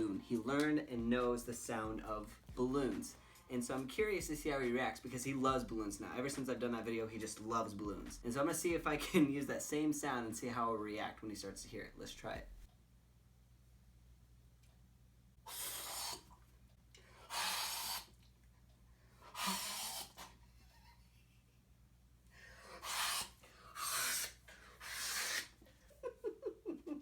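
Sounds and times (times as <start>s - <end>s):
person blowing puffs of air: 15.4s - 16.3s, 17.2s - 18.1s, 19.3s - 20.4s, 22.5s - 25.6s.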